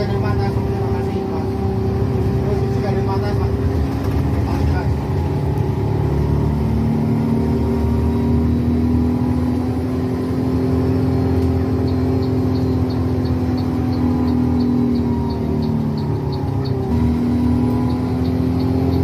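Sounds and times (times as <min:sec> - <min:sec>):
bus running: 0:00.0 - 0:19.0
turn indicator ticking: 0:11.1 - 0:19.0.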